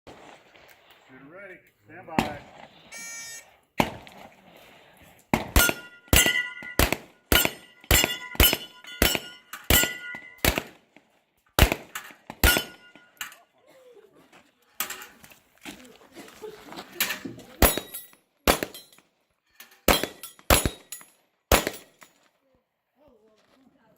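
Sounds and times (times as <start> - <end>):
pistol shots: 5.3 - 10.8, 11.6 - 12.8, 17.6 - 18.9, 19.9 - 22.0
bullets clanging on steel targets: 5.5 - 10.7, 11.8 - 13.5, 14.8 - 15.2, 17.0 - 22.2.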